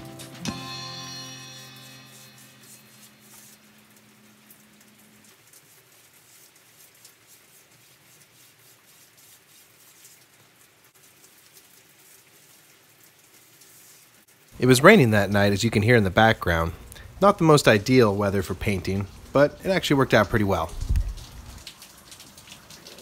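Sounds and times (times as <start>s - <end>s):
background music note: 0.0s - 3.8s
rain pattering: 1.8s - 23.0s.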